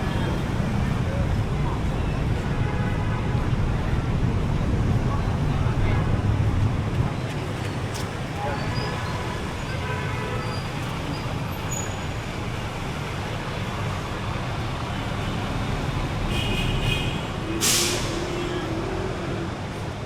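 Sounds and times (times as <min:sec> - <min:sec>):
street traffic rumble: 0:00.0 - 0:20.0
loud hiss: 0:17.6 - 0:18.3.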